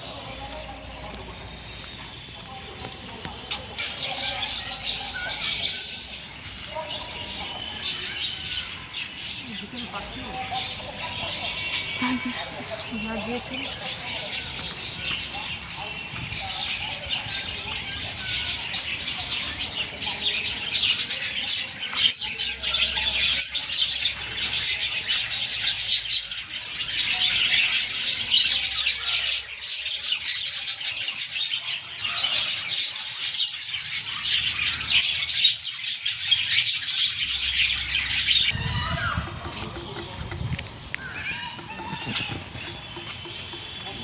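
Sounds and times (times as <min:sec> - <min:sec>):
small birds chirping: 0:00.0 - 0:44.0.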